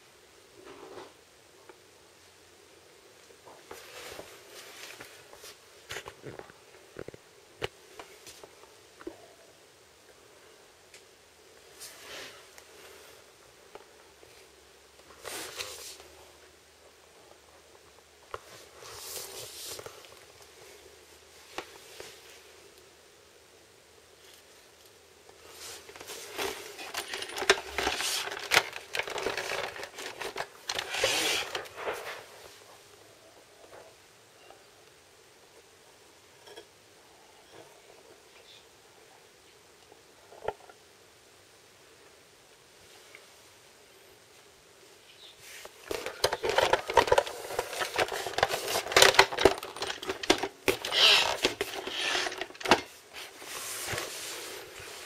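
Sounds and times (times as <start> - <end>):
rustling: 3.3 - 9.2, 11.6 - 16.6, 18.0 - 22.8, 24.2 - 33.0, 45.1 - 55.0
scraping and rustling: 25.4 - 32.8, 45.4 - 55.0.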